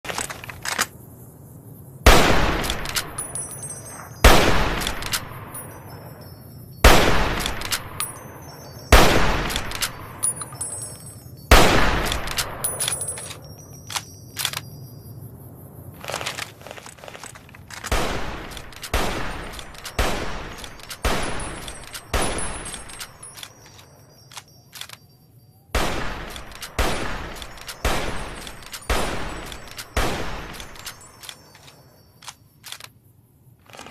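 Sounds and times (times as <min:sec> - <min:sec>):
rifle shots echoing: 0:02.1 - 0:06.0, 0:06.8 - 0:08.2, 0:08.9 - 0:10.8, 0:11.5 - 0:13.4, 0:17.8 - 0:23.4, 0:25.8 - 0:31.2.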